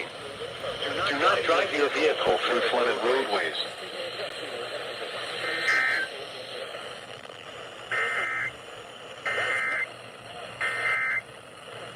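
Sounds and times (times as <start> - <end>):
radio hiss: 0.0 - 11.9
buzzy digital data tones: 5.4 - 6.2, 7.8 - 8.6, 9.2 - 10.0, 10.6 - 11.4.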